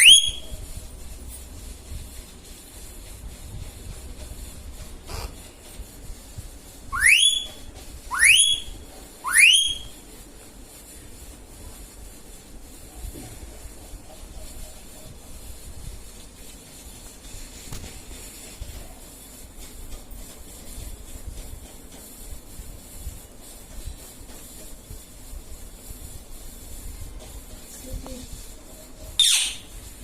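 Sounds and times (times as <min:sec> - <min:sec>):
parrot whistled calls: 0:00.0 - 0:00.5, 0:06.9 - 0:09.9, 0:29.2 - 0:29.7.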